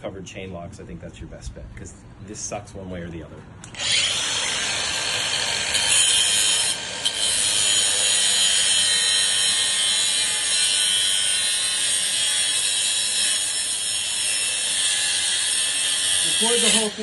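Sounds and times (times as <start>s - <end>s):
power tool grinding metal: 3.7s - 17.0s.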